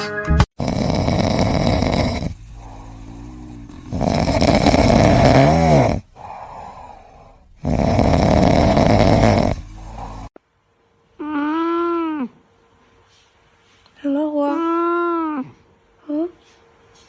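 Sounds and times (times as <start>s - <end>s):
pet snoring loudly: 0.6s - 10.4s.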